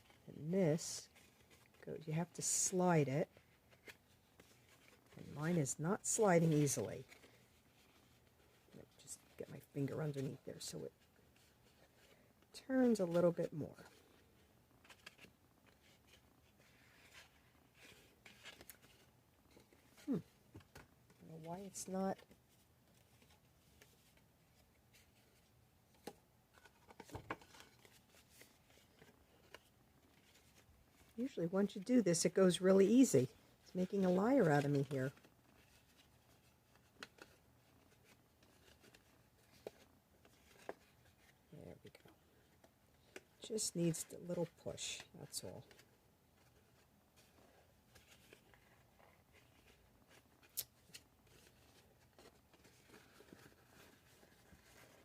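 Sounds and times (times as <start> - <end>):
cardstock rustling and scraping: 0.8 - 55.0.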